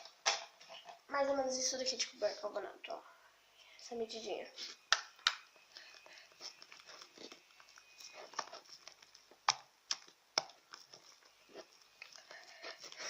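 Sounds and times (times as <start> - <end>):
soft crackling: 3.6 - 13.0.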